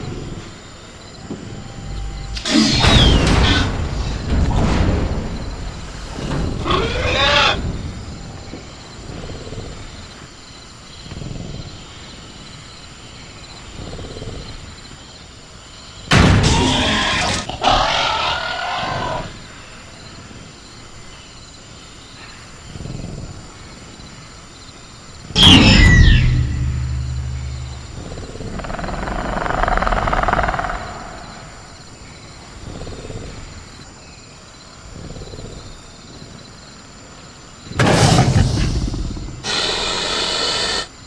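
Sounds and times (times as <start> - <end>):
crickets chirring: 0.0 - 41.0
creature growling call: 6.6 - 7.7, 16.5 - 19.4, 37.8 - 40.9
screeching growl: 6.6 - 7.8, 16.5 - 19.3, 25.4 - 31.8, 37.8 - 40.9.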